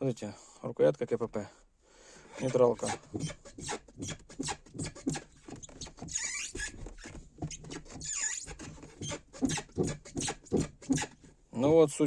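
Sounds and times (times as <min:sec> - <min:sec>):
gear-shift lever squeaking: 0:02.3 - 0:11.3.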